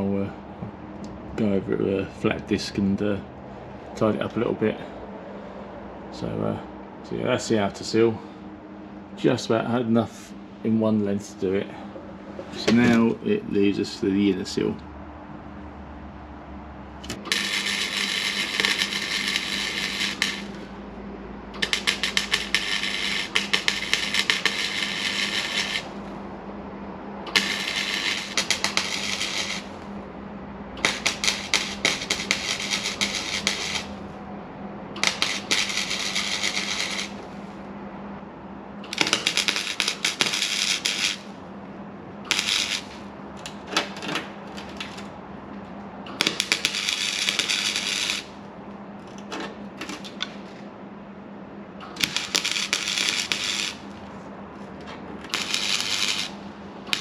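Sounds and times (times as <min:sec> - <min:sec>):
low steady hum: 0:00.0 - 0:57.0
crackling sputtering welding: 0:17.0 - 0:20.7, 0:21.6 - 0:26.2, 0:27.3 - 0:29.9, 0:30.8 - 0:34.1, 0:35.0 - 0:37.4, 0:38.8 - 0:41.4, 0:42.3 - 0:45.1, 0:46.1 - 0:48.4, 0:49.8 - 0:50.4, 0:51.8 - 0:54.0, 0:55.2 - 0:57.0.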